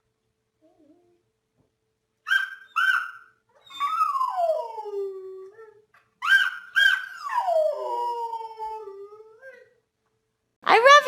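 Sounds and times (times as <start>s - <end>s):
dog yelping: 2.3s - 4.8s, 6.2s - 7.9s
dog howling: 3.6s - 9.7s.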